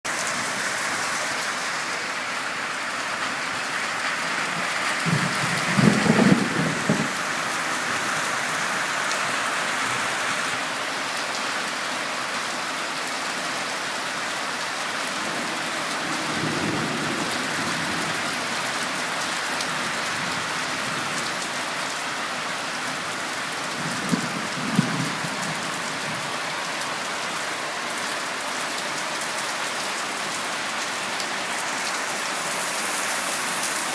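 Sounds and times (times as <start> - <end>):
steady rain falling: 0.1 - 33.9
thunder rumbling: 4.6 - 7.2.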